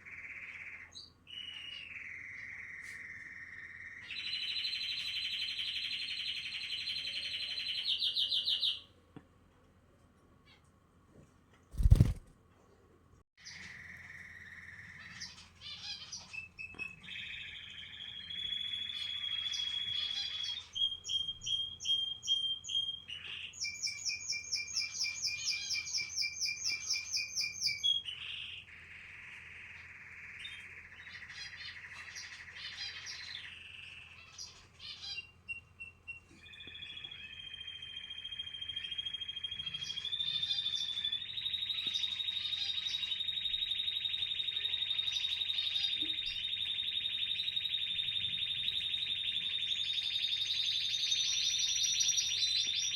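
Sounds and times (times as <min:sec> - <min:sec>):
canary singing: 0:11.8 - 0:12.2, 0:13.5 - 0:28.7, 0:30.2 - 0:52.9.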